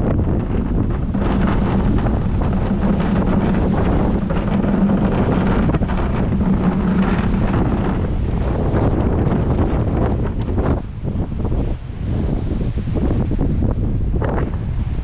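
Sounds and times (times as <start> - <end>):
low hum: 0.0 - 11.0
wind buffeting microphone: 0.0 - 15.0.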